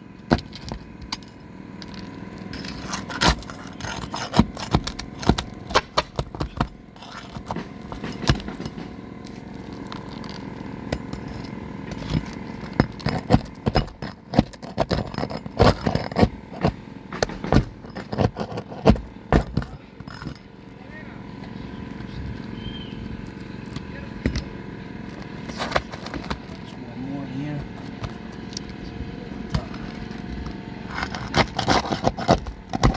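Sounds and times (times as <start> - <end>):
metal tool tapping and scraping: 0.3 - 10.3, 10.9 - 20.5.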